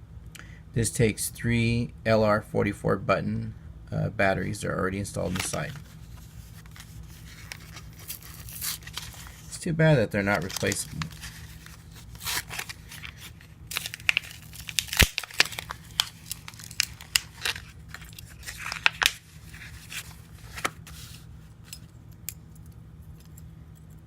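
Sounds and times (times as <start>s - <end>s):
crinkly plastic rustling: 5.2s - 9.6s, 10.2s - 21.3s.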